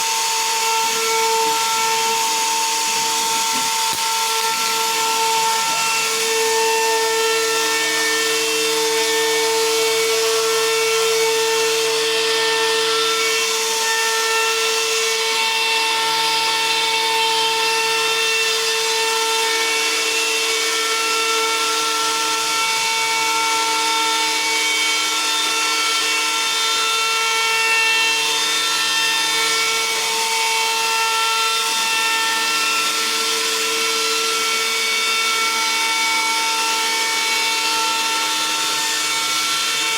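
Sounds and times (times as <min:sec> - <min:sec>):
hiss of wood cutting: 0:00.0 - 0:10.5
router spindle whining: 0:00.0 - 0:39.9.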